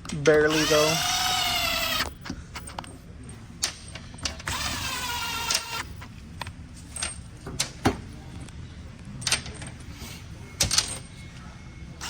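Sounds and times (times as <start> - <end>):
electric driver whining: 0.4 - 2.2.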